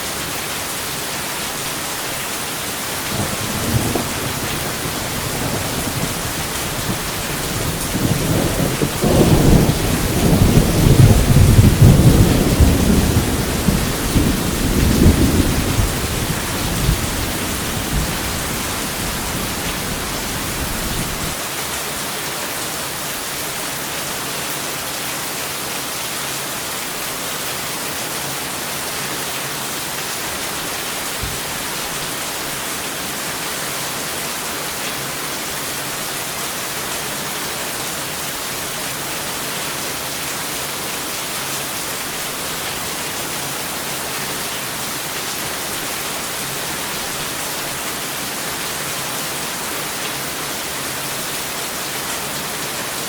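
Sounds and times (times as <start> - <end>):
steady rain: 0.0 - 53.0
thunder rumbling: 3.0 - 21.4.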